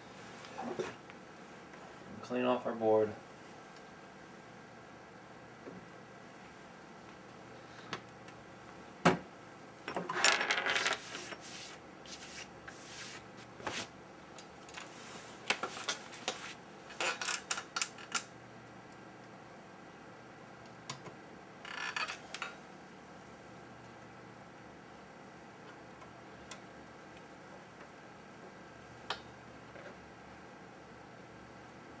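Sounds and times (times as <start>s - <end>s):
scrubbing on circuit board: 10.8s - 13.9s.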